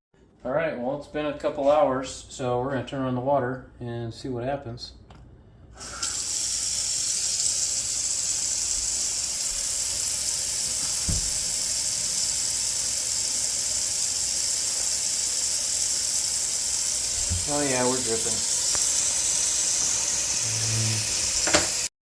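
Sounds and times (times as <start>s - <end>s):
water running into sink: 5.8s - 21.9s
low thump: 11.1s - 11.4s.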